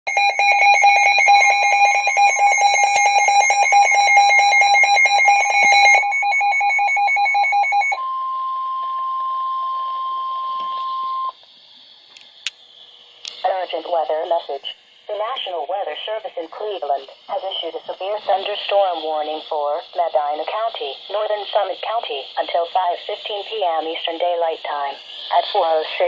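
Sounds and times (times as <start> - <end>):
pulsing electronic alarm: 0.1 - 11.4
steady warning alarm tone: 0.1 - 11.4.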